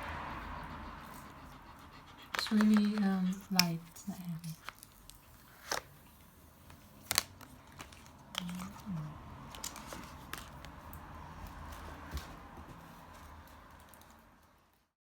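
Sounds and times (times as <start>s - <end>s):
packaging rustling and crinkling: 2.3s - 12.3s.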